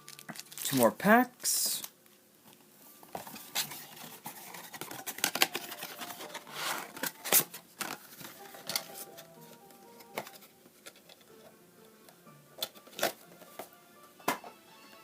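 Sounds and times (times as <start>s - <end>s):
foil packs rustling and crinkling: 0.0s - 1.9s, 3.1s - 9.3s.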